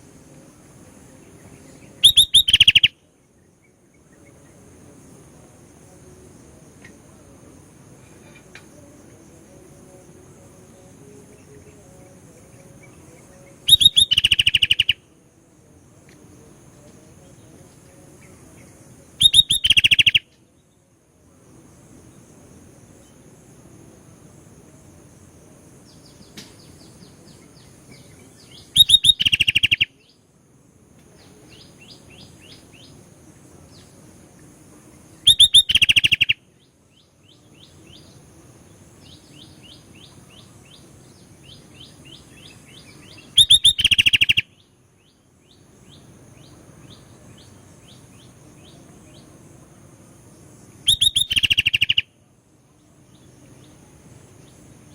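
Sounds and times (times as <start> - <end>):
bird song bursts: 1.3 - 4.4, 13.6 - 15.0, 19.2 - 20.3, 25.9 - 30.2, 35.2 - 38.0, 39.0 - 49.3, 50.9 - 52.1.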